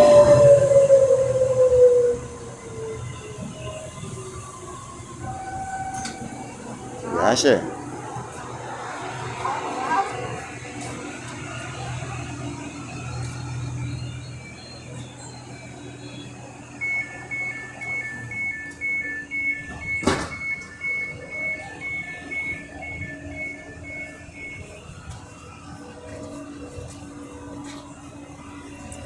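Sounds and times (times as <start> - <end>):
two-tone door warning beep: 5.2 - 7.6, 11.4 - 25.5.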